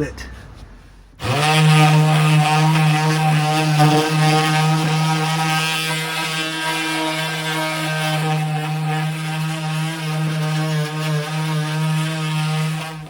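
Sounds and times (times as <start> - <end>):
electric sander buzzing: 0.0 - 13.0.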